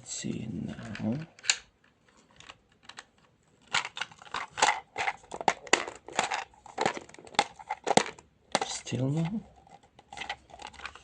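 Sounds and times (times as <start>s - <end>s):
hard plastic clicking and clattering: 2.3s - 11.0s.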